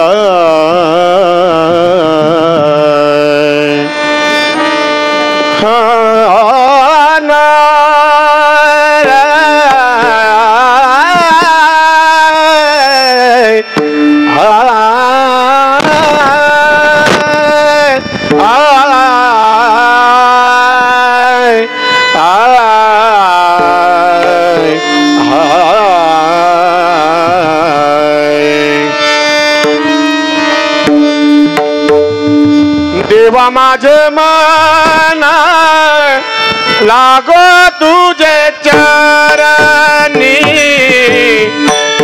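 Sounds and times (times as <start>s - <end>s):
person singing wordless vocal: 0.0s - 4.0s, 5.5s - 29.1s, 32.9s - 42.0s
tabla strokes: 0.0s - 42.0s
steady drone: 21.4s - 33.4s.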